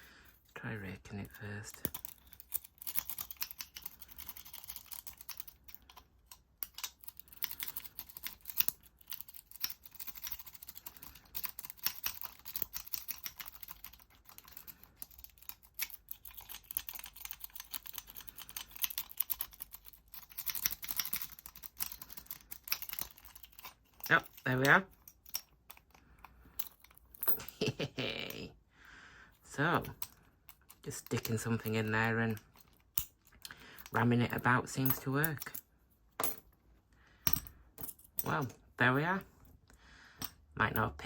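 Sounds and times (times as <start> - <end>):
lock pick raking in padlock: 1.6 - 27.4.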